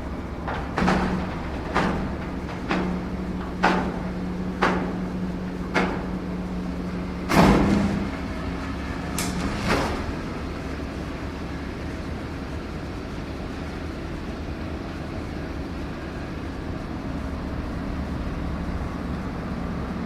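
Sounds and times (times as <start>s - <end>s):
hydraulic pump hum: 0.0s - 20.0s.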